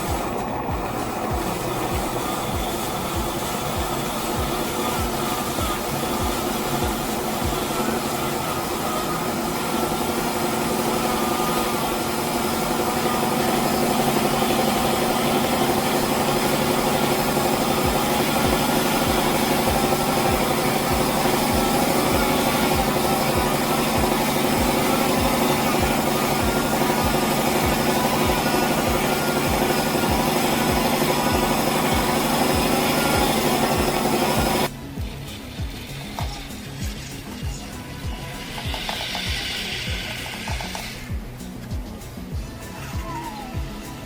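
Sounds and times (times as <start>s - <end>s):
toy truck electric motor whine: 0.0s - 44.0s.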